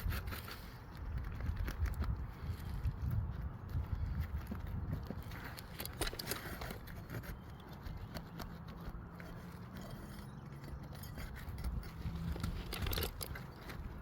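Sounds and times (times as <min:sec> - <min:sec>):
shingles scraping: 0:04.7 - 0:14.0.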